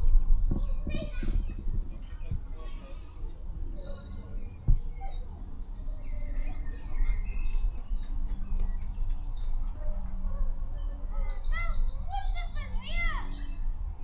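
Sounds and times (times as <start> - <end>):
low rumble on microphone: 0.0 - 14.0
songbirds singing and chirping: 0.0 - 14.0.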